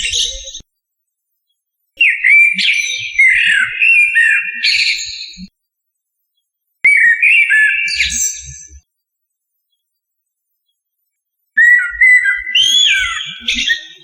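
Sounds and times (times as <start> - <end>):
blackbird singing: 2.0 - 5.5, 6.9 - 8.8, 11.6 - 14.0.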